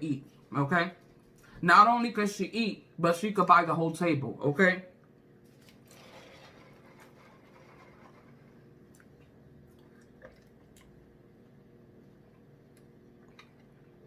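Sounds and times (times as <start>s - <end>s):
low steady hum: 0.0s - 14.0s
quiet chewing with clicks: 8.9s - 14.0s.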